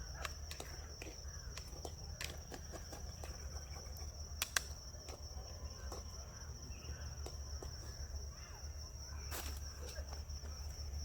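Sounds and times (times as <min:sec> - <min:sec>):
crickets trilling: 0:00.0 - 0:11.0
sharp clicks and cracks: 0:04.4 - 0:04.8.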